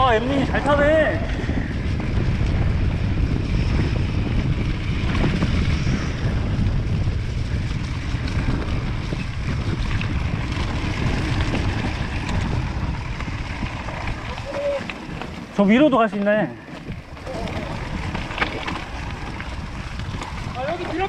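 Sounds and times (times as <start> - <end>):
bicycle tyre noise on dirt: 0.0 - 21.0
wind rumble on microphone: 0.0 - 21.0
bike rattling clicks: 9.8 - 20.5.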